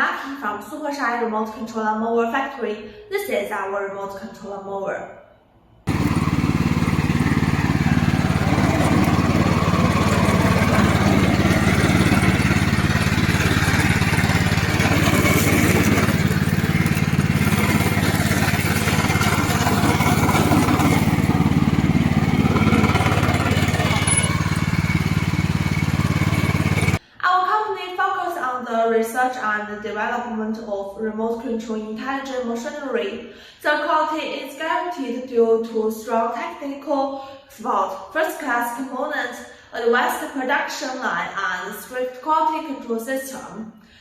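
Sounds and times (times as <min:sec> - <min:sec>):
lawn mower engine running: 0:05.9 - 0:27.0.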